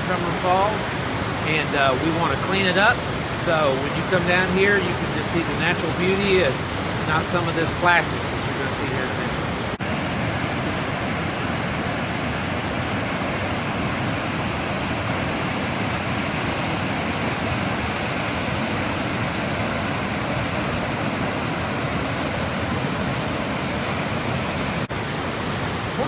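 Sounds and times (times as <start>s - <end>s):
waterfall roaring: 0.0s - 26.0s.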